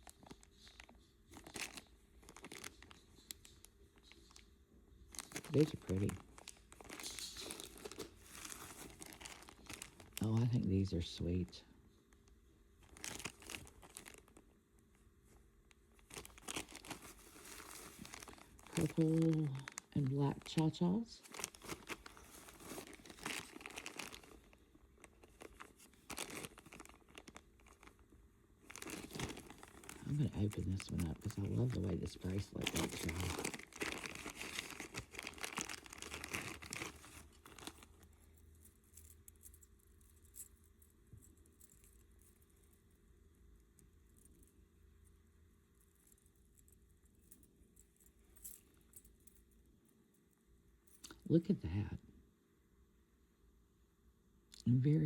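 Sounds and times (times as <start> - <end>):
plastic bag crinkling: 0.0 - 4.4, 5.1 - 10.6, 12.8 - 14.5, 15.9 - 42.6
faint handling noise: 0.0 - 51.3.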